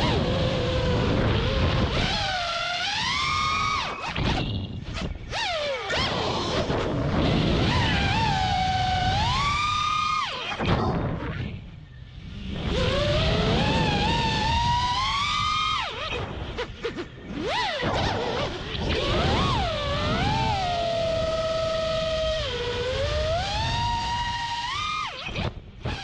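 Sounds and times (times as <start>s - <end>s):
quadcopter motors whining: 0.0s - 26.0s.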